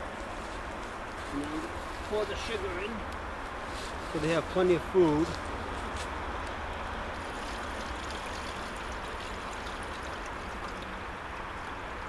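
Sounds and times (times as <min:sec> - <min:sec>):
water pouring in a stream: 0:06.6 - 0:12.0.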